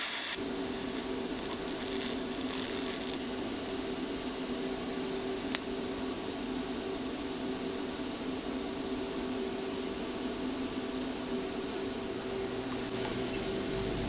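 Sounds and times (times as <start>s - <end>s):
low mechanical hum: 0.0s - 14.0s.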